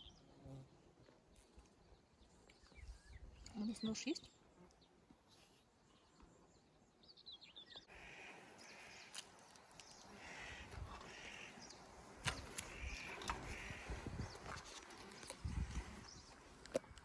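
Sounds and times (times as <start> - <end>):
small bird calling: 2.5 - 16.7
footsteps on forest trail: 7.9 - 17.0
sharp clicks: 11.6 - 13.8.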